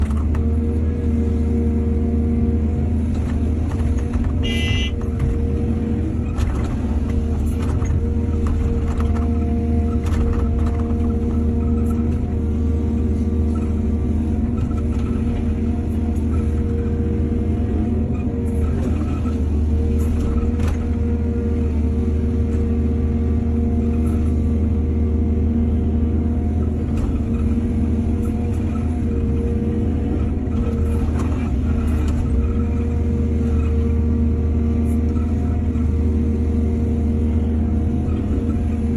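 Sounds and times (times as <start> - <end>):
diesel earthmoving machinery running: 0.0 - 38.9
brief high-pitched tone: 4.4 - 5.0.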